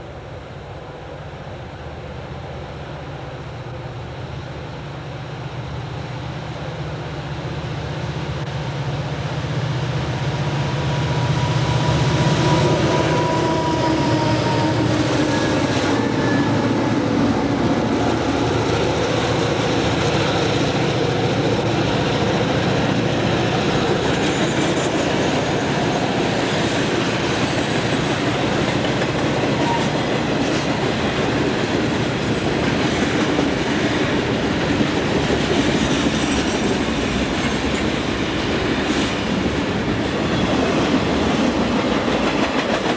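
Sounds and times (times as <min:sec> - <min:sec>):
locomotive engine drone: 0:00.0 - 0:42.9
train wheels rumbling on rail: 0:00.0 - 0:42.9
high wheel squeal: 0:10.6 - 0:17.0, 0:29.5 - 0:30.1.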